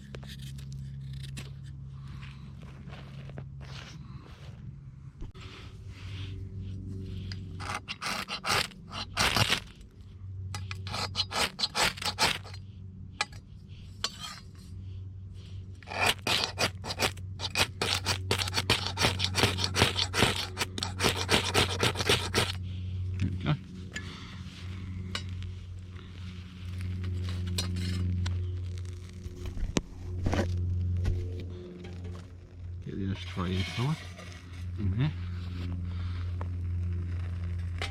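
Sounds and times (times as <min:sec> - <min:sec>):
knife scraping wood shavings: 0:00.0 - 0:01.8, 0:07.6 - 0:09.8, 0:10.6 - 0:12.6, 0:15.8 - 0:22.6, 0:33.1 - 0:34.7.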